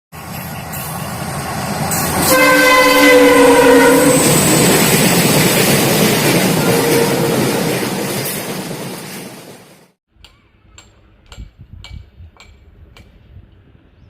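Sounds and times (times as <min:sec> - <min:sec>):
train rumbling: 0:00.1 - 0:10.0
train horn blast: 0:02.0 - 0:04.5, 0:06.6 - 0:07.6.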